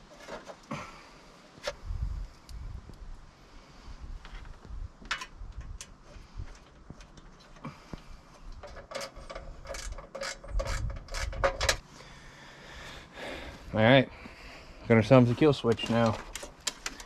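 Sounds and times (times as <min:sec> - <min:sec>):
hand tools clicking and scraping: 0:00.0 - 0:00.9, 0:05.1 - 0:11.8, 0:15.1 - 0:17.0.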